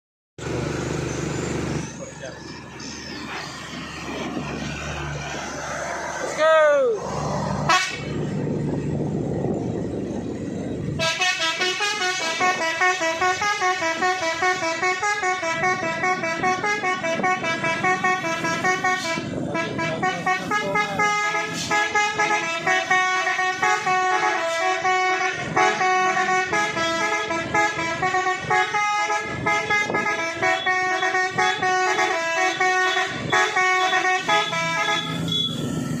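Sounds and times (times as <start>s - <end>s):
multi-tone truck horn tune: 7.6s - 8.2s, 10.9s - 35.8s.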